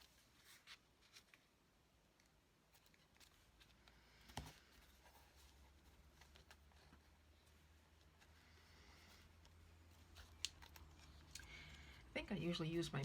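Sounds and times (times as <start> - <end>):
paper rustling: 0.0 - 1.6, 2.7 - 12.0.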